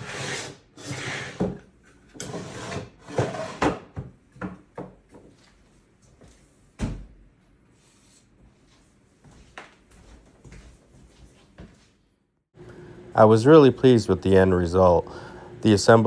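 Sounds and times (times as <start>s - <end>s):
drawers sliding: 0.0s - 1.6s, 2.2s - 3.9s.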